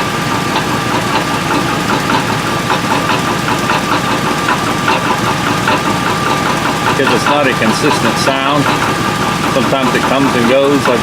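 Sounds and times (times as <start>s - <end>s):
engine idling with light knocks: 0.0s - 11.0s
man speaking: 7.0s - 8.7s, 9.6s - 11.0s.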